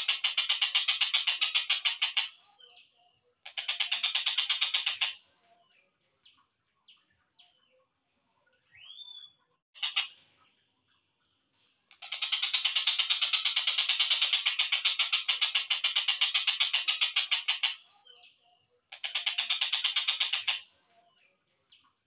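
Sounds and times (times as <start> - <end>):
harsh rattling bird trill: 0.0 - 2.6, 3.4 - 5.2, 11.9 - 18.2, 18.9 - 20.7.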